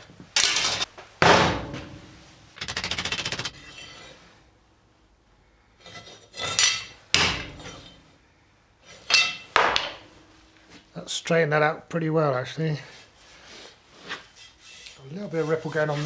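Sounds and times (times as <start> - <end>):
loud knocks on metal: 0.6 - 3.8.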